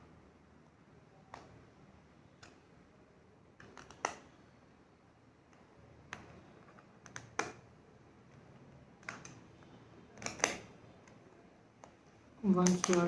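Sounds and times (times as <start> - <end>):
plastic parts clicking: 9.0 - 11.2, 11.8 - 13.0.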